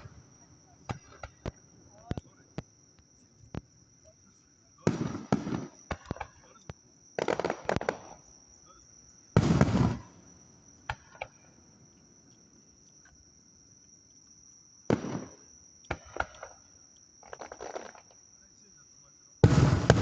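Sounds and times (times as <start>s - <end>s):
fireworks bursting: 0.0s - 2.7s, 4.8s - 6.6s, 7.2s - 8.3s, 9.3s - 11.5s, 14.9s - 16.6s, 17.2s - 18.2s, 19.4s - 20.0s
insects chirring: 0.0s - 20.0s.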